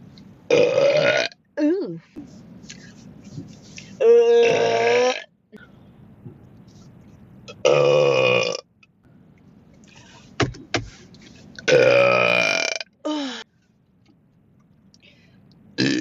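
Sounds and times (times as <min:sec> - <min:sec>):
loud belches: 0:00.5 - 0:01.4, 0:04.2 - 0:05.3, 0:07.6 - 0:08.6, 0:11.7 - 0:12.9, 0:15.8 - 0:16.0.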